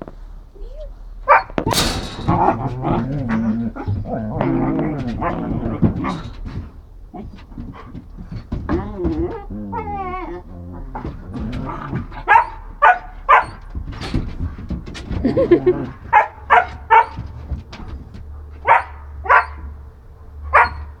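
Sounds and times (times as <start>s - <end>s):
dog barking: 1.3s - 1.8s, 12.2s - 13.7s, 16.1s - 17.4s, 18.6s - 19.8s, 20.4s - 21.0s
dog whining: 8.6s - 12.7s.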